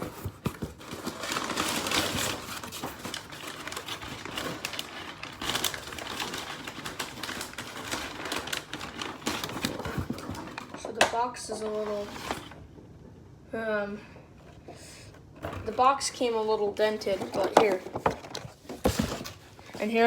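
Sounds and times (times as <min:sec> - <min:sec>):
package wrapping crinkling open: 0:00.4 - 0:10.8.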